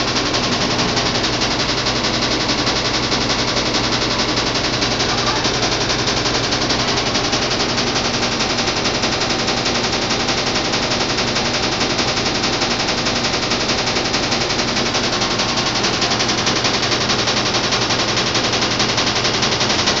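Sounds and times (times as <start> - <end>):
washing machine rattling knock: 0.0 - 20.0.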